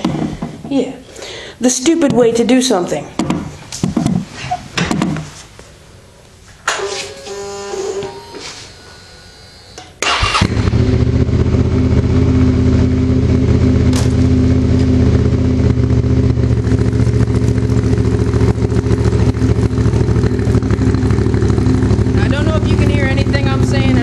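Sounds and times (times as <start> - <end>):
motorcycle engine starting and idling: 6.7 - 24.0.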